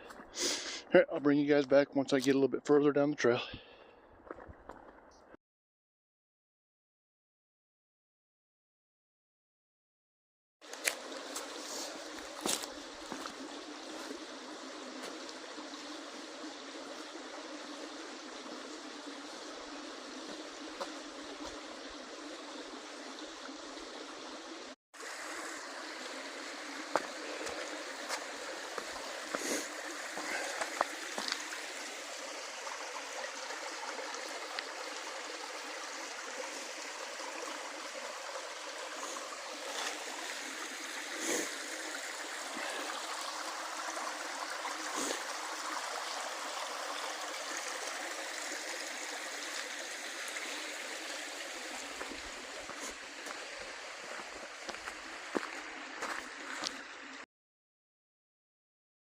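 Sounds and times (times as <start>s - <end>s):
stream water rushing: 10.6s - 57.2s.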